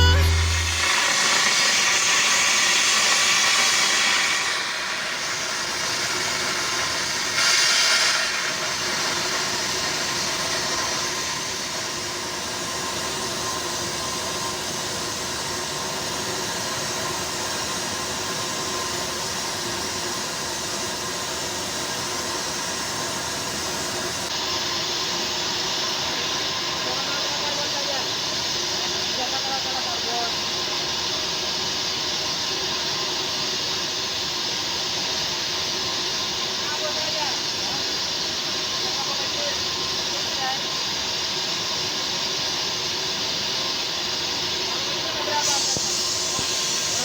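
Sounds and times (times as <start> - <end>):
welding arc hissing and crackling: 0.1 - 47.0.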